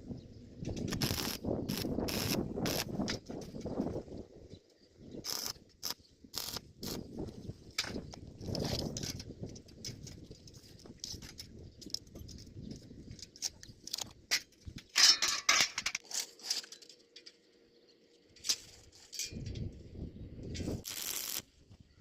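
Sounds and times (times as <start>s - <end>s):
small iron pieces clinking: 13.1s - 17.4s, 18.4s - 19.6s.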